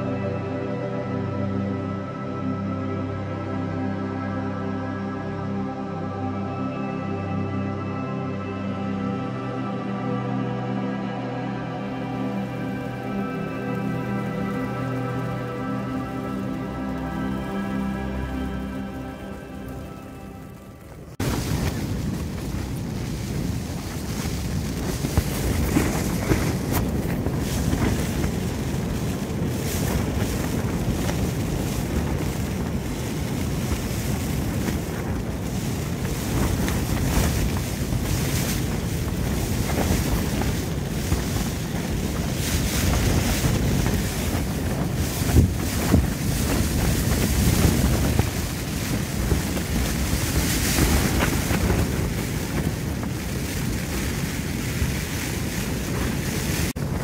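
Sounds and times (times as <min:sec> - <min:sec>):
gusting wind: 0:00.0 - 0:57.0
tent fabric flapping: 0:12.0 - 0:57.0.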